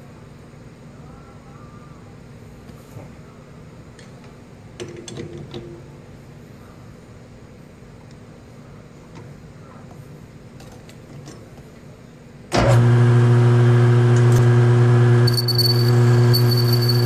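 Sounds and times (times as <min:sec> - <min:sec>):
metal lathe motor hum: 0:12.6 - 0:17.0
brief tone: 0:15.2 - 0:17.0.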